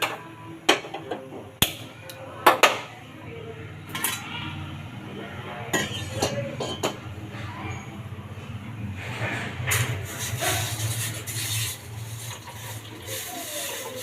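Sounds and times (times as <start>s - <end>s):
pots and utensils clattering: 0.0s - 1.6s, 3.9s - 4.4s, 5.7s - 7.1s, 9.0s - 14.0s.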